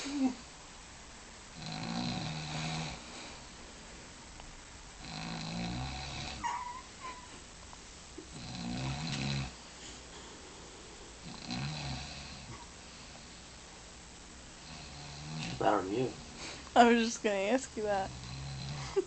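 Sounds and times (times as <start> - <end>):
woman snoring: 0.0 - 0.5, 1.5 - 3.1, 5.0 - 6.5, 8.3 - 9.6, 11.2 - 12.6, 14.6 - 15.6, 17.9 - 19.0.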